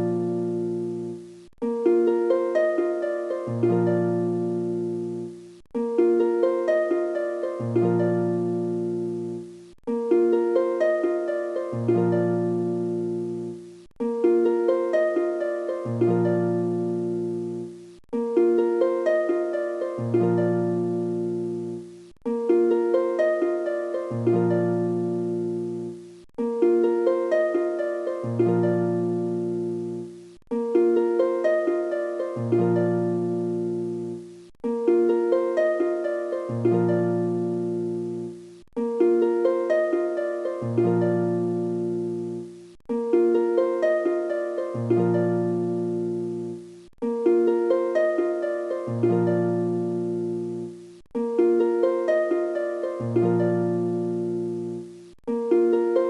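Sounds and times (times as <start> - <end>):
looping plucked harp phrase: 0.0 - 56.0.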